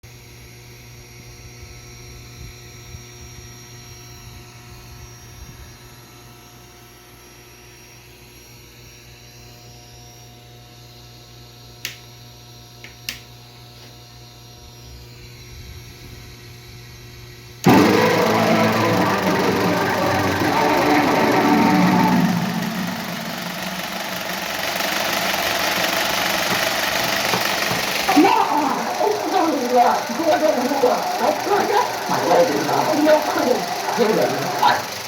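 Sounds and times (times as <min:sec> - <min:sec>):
film projector humming: 0:17.6 - 0:35.0.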